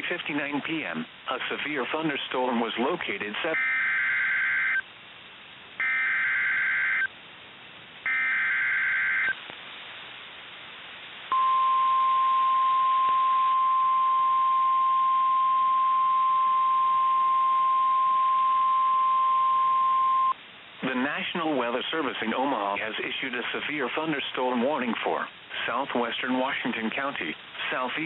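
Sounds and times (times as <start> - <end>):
radio hiss: 0.0 - 3.7, 20.8 - 28.0
steady warning alarm tone: 3.6 - 4.8, 5.8 - 7.1, 8.1 - 9.3
data tone bursts: 11.3 - 20.4.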